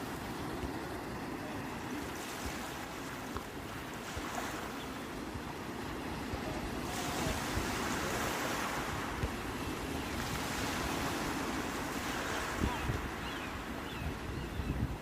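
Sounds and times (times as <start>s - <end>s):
sea waves washing onto shore: 0.0s - 15.0s
wind on microphone: 4.0s - 15.0s.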